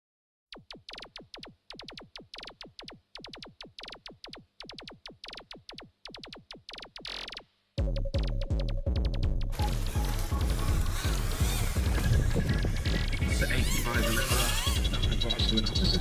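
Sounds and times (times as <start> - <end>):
synthesizer zaps falling in pitch: 0.5 - 16.0
falling synth sweep: 9.5 - 16.0.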